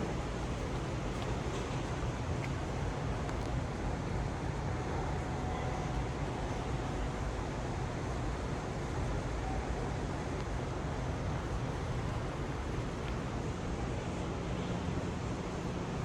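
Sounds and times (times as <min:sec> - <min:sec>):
subway platform rumble and hiss: 0:00.0 - 0:16.0.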